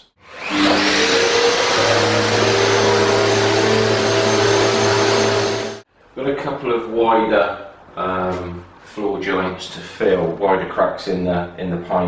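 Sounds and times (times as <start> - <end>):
floor sander rushing noise: 0.2 - 5.8
sander motor whine: 0.2 - 5.8.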